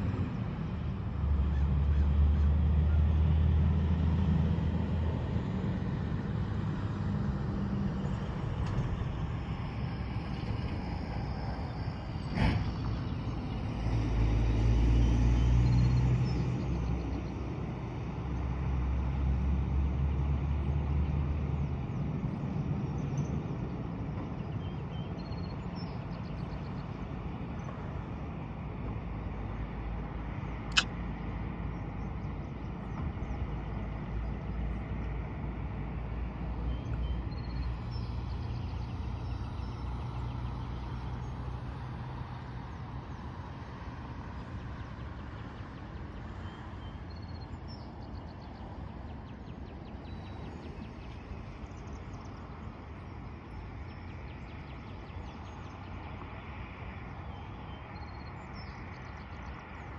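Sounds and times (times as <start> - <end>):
distant engine droning: 0.0 - 59.9
sharp click: 30.7 - 30.9.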